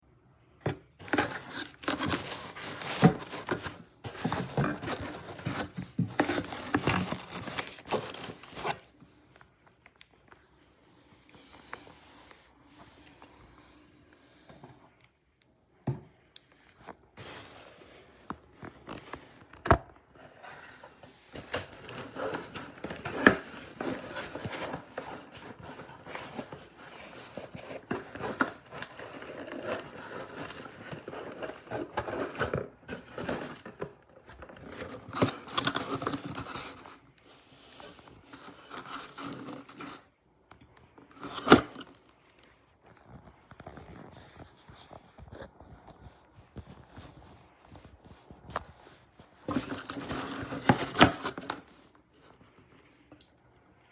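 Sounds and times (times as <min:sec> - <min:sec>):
scraping and rustling: 0:00.9 - 0:09.0, 0:20.2 - 0:40.2.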